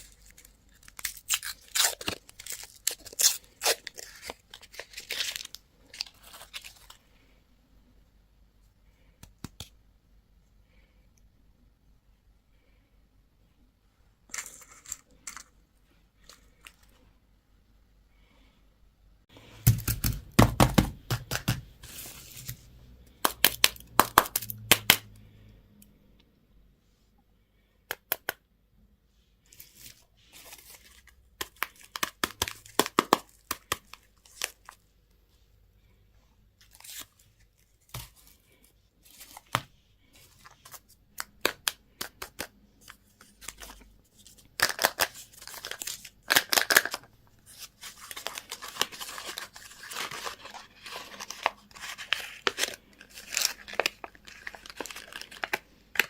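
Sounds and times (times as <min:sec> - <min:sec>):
plastic wrapper crinkling: 0:00.0 - 0:07.0, 0:42.8 - 0:56.0.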